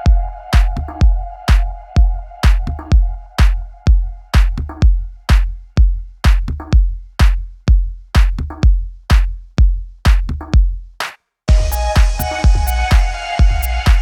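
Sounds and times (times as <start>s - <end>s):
electronic dance music: 0.0s - 5.6s, 11.5s - 14.0s
heavy kick drum: 0.0s - 14.0s.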